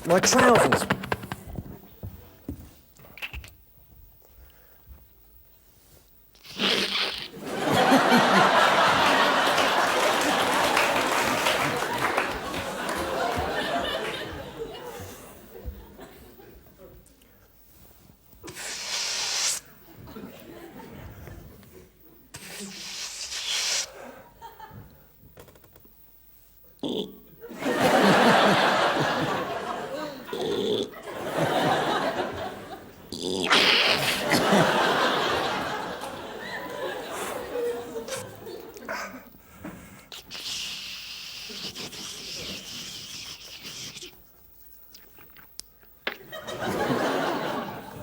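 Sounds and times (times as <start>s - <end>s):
audience laughing: 7.3s - 16.6s, 27.4s - 39.3s, 46.2s - 48.0s
audience applause: 7.4s - 14.9s, 33.9s - 38.1s
man making hissing sound: 18.5s - 19.7s, 22.3s - 24.0s, 33.1s - 34.6s, 38.9s - 44.2s.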